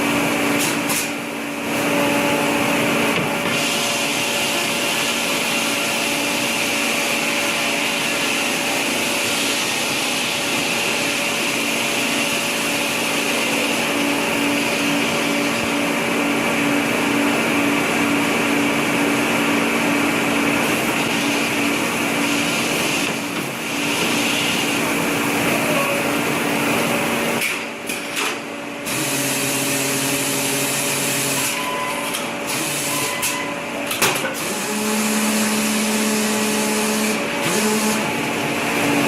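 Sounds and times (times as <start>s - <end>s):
machine motor hum and whine: 0.0s - 39.0s.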